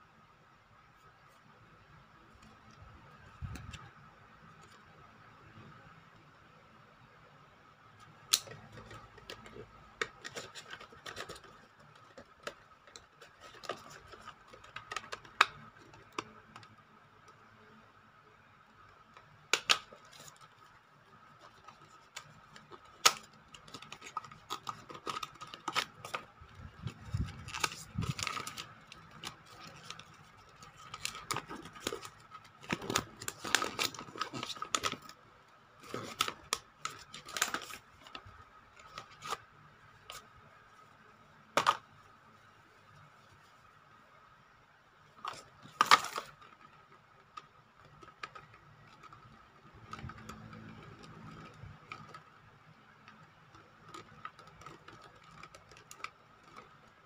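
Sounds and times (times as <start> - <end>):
packaging clicks and rustles: 8.1 - 17.4, 18.8 - 40.7, 45.0 - 57.0.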